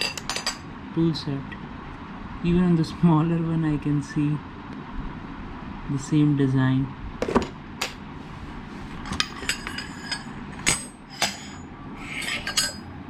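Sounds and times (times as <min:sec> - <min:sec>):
metal spanners clinking: 0:00.0 - 0:00.6, 0:09.1 - 0:12.8.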